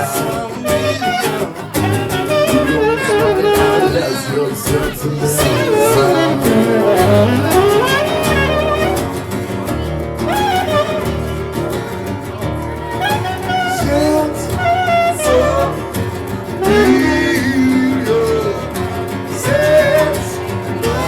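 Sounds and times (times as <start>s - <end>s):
band playing: 0.0s - 21.0s
gliding melodic lead: 5.3s - 17.7s.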